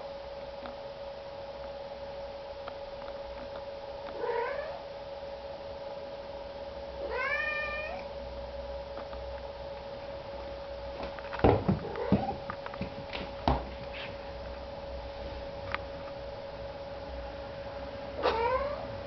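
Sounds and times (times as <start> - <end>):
steady hum: 0.0 - 19.0
cat meowing: 4.2 - 4.8, 7.0 - 8.0, 18.2 - 18.9.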